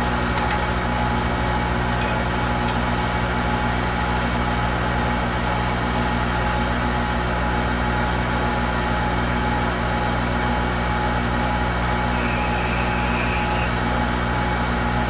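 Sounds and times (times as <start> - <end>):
electric machine humming: 11.8 - 15.0.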